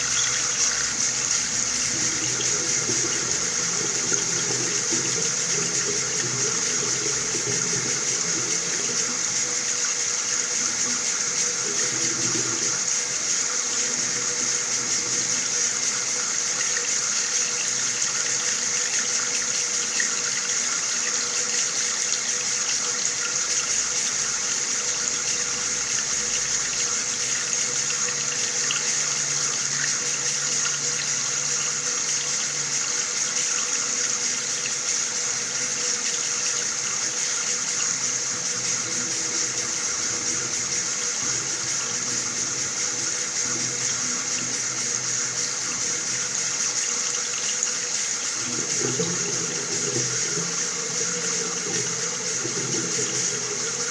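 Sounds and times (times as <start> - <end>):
faint steady hum: 0.0 - 53.9
tap water running: 0.0 - 53.9.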